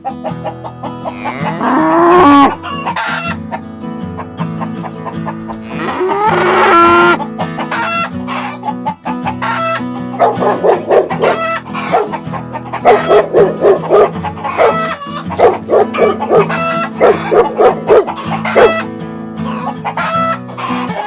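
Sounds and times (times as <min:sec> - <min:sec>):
background music: 0:00.0 - 0:21.0
dog barking: 0:10.2 - 0:12.2, 0:12.8 - 0:18.8.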